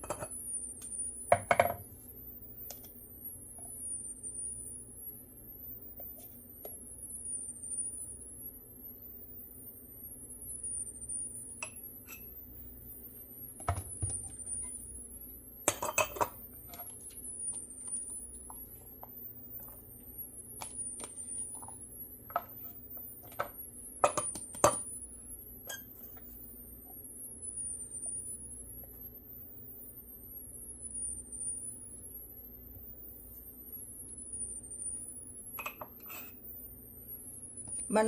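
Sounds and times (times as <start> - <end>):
spoon clinking against glass jar: 0.0 - 0.3, 15.7 - 16.4, 35.6 - 36.4.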